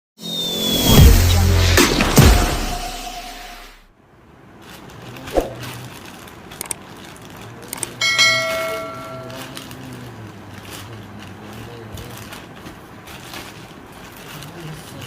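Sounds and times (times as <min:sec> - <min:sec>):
bright metallic ring: 0:08.0 - 0:09.6.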